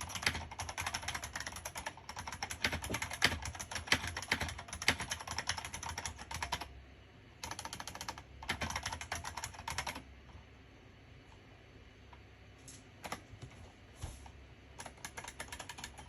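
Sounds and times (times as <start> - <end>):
mechanical keyboard typing: 0.0 - 6.7, 7.4 - 10.1, 14.8 - 16.0.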